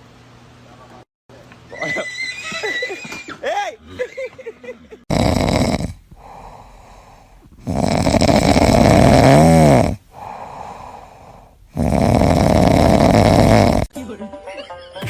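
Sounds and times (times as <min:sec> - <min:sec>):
animal snoring loudly: 0:05.1 - 0:13.9
animal breathing quietly: 0:06.0 - 0:09.0.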